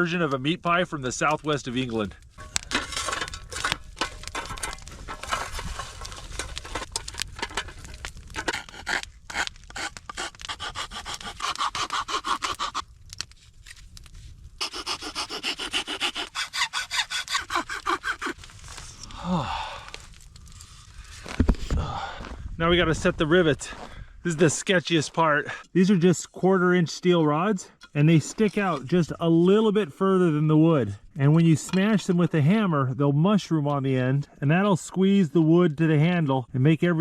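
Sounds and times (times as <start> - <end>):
hand saw cutting wood: 8.4 - 12.8, 14.6 - 18.4.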